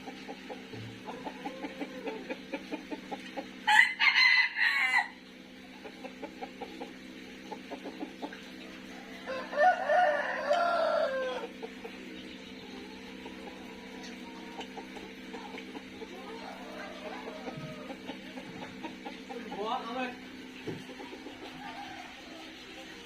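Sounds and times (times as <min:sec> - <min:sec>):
soft clucks: 0:00.0 - 0:03.6, 0:05.5 - 0:08.9, 0:11.4 - 0:23.0
rooster crowing: 0:01.0 - 0:02.4, 0:03.7 - 0:05.2, 0:08.8 - 0:11.6, 0:16.1 - 0:18.5, 0:21.3 - 0:22.6.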